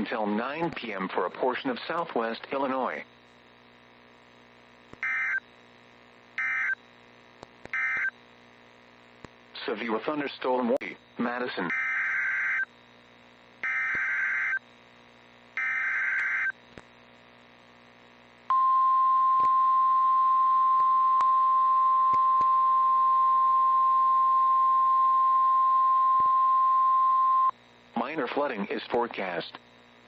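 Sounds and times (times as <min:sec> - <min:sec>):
raspy digital data bursts: 0:05.0 - 0:05.4, 0:13.6 - 0:14.6
steady warning alarm tone: 0:05.0 - 0:05.4, 0:06.4 - 0:06.8, 0:07.8 - 0:08.1, 0:11.7 - 0:12.7, 0:13.6 - 0:14.6, 0:15.6 - 0:16.5.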